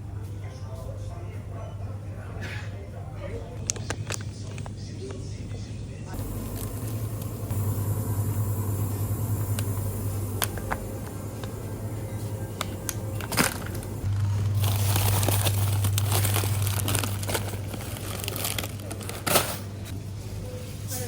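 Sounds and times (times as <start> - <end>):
steady low hum: 0.0 - 20.9
plastic or paper crinkling: 3.5 - 4.8, 6.2 - 7.3, 12.6 - 19.9.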